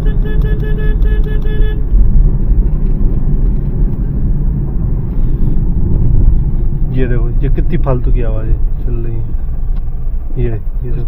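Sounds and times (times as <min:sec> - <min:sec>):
car driving rumble: 0:00.0 - 0:11.0
road and running-gear noise: 0:00.0 - 0:11.0.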